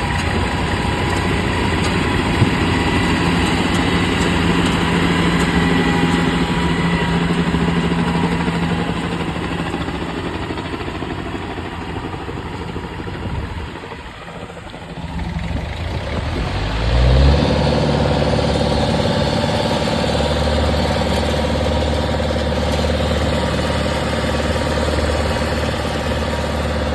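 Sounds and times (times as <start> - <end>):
combine harvester diesel engine: 0.0 - 26.9.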